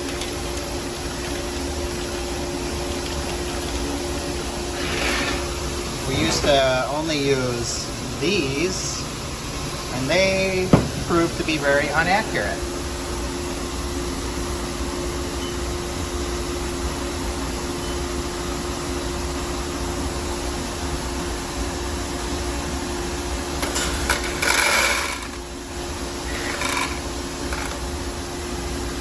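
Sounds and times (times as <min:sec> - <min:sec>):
machinery hum: 0:00.0 - 0:29.0
corn rattling in a tester: 0:23.6 - 0:25.6, 0:26.2 - 0:28.0.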